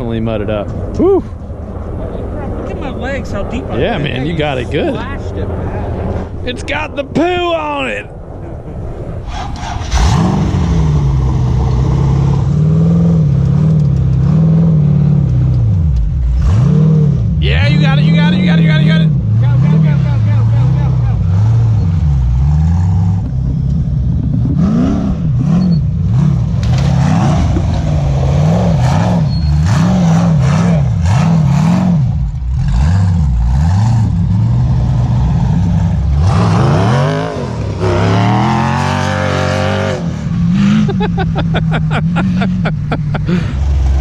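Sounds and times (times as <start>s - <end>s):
engine revving hard: 9.3s - 15.3s, 16.2s - 23.3s, 24.3s - 44.0s.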